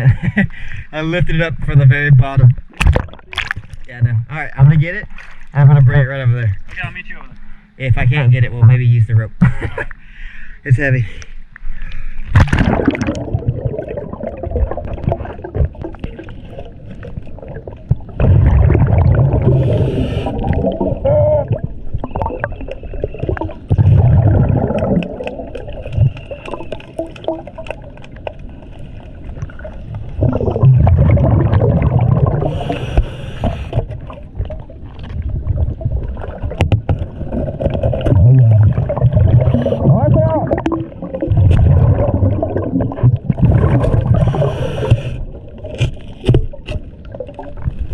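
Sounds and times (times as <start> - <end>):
underwater wash: 0.0 - 8.8, 11.1 - 47.9
regulator inhale hiss: 10.0 - 12.3, 19.4 - 20.5, 32.4 - 33.9, 44.1 - 45.3
bubbling exhalations: 12.3 - 28.3, 29.2 - 47.9.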